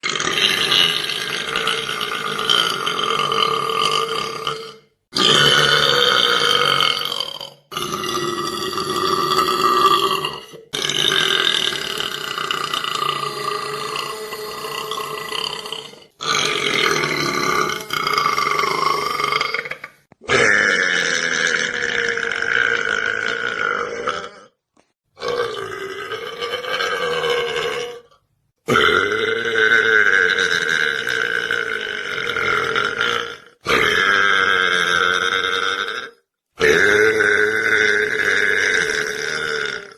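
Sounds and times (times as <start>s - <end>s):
man belching: 0.0s - 39.9s.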